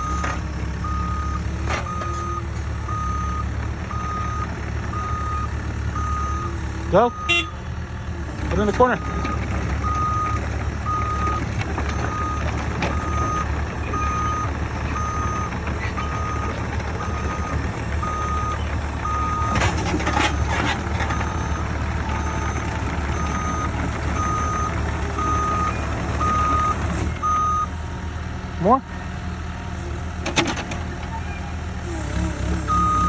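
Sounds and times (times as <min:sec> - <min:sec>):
excavator engine running: 0:00.0 - 0:33.0
travel alarm beeping: 0:09.0 - 0:20.5, 0:21.1 - 0:27.7.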